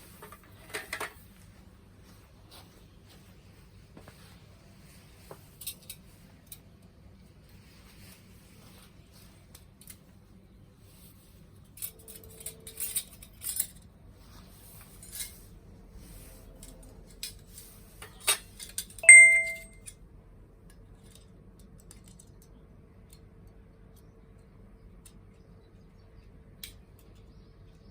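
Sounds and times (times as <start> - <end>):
metal striking metal ding: 19.0 - 19.7.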